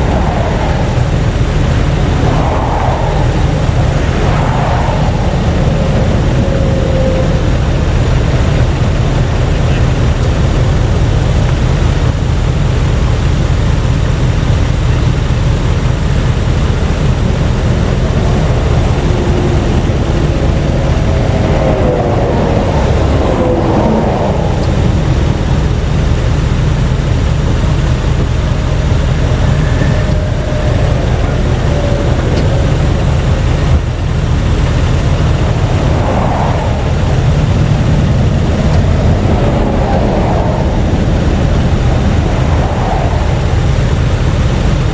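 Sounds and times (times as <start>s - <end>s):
vehicle and road rumble: 0.0s - 44.9s
faint wavering tones: 27.8s - 44.9s.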